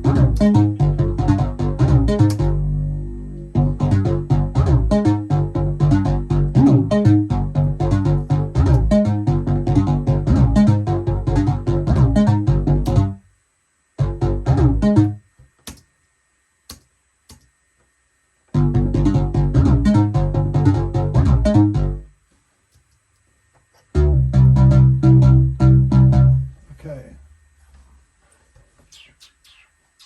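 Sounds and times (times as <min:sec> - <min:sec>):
synthesizer sequenced pattern: 0:00.0 - 0:13.1
bass line: 0:00.0 - 0:13.2, 0:14.0 - 0:15.2, 0:18.5 - 0:22.1, 0:23.9 - 0:26.6
clicks: 0:15.6 - 0:15.9.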